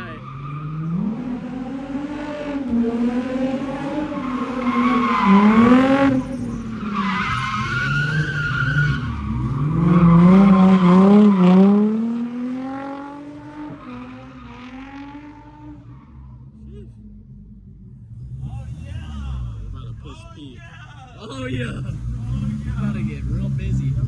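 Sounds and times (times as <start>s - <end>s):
car engine revving: 0.0s - 24.0s
tyres squealing: 4.3s - 11.6s.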